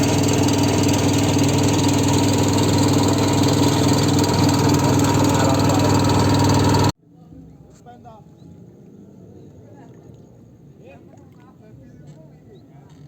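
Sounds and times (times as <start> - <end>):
engine running steadily: 0.0 - 6.9.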